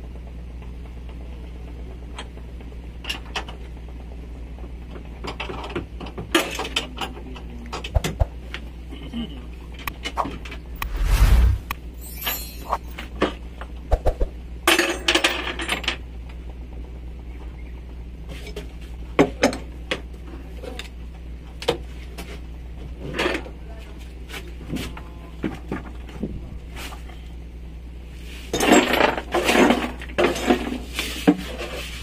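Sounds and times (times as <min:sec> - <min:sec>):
steady low hum: 0:07.6 - 0:14.7
metal hand tools clinking: 0:12.0 - 0:13.0.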